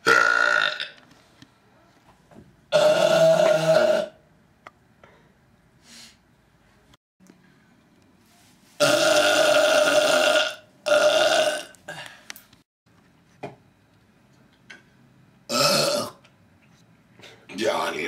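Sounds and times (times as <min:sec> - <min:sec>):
man belching: 0:00.0 - 0:01.0, 0:02.7 - 0:04.2, 0:08.8 - 0:11.7, 0:15.5 - 0:16.2.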